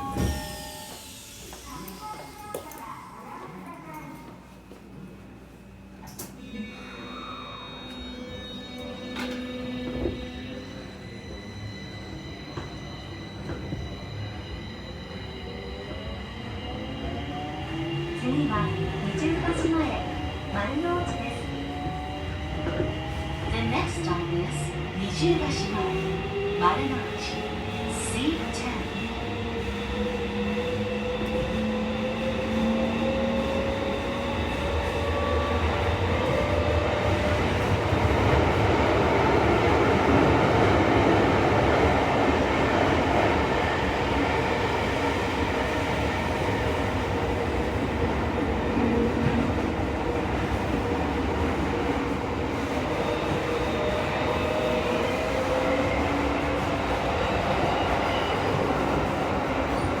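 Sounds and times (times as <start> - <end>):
train motor whine: 0.0 - 2.8
train wheels rumbling on track: 12.3 - 60.0.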